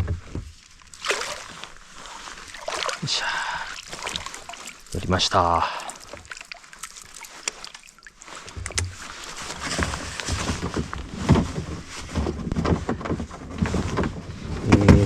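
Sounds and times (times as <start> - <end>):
knocks and rustling on a kayak: 0.0 - 3.0, 7.2 - 15.0.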